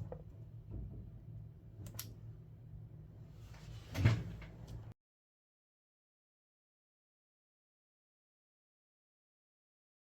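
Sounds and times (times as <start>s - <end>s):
steady low hum: 0.0s - 4.9s.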